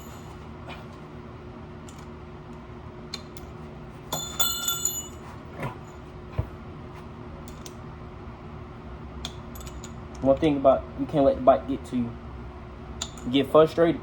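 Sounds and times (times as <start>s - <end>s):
metal tools clinking: 4.1s - 5.2s
ringing metallic clatter: 4.1s - 5.2s.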